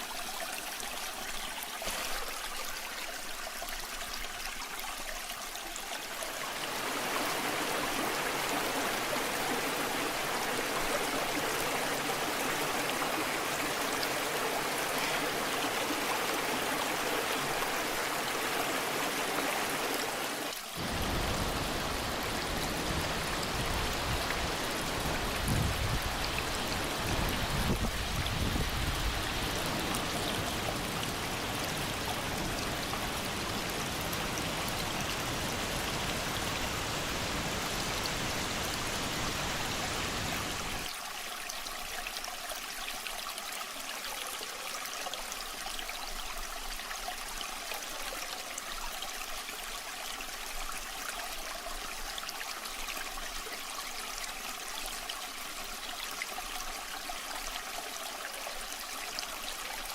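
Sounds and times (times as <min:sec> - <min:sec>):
waterfall rushing and splashing: 0:06.5 - 0:41.0.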